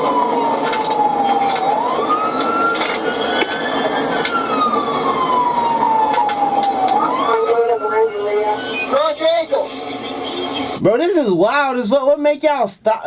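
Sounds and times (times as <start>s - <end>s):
police siren wailing: 0.0s - 10.1s.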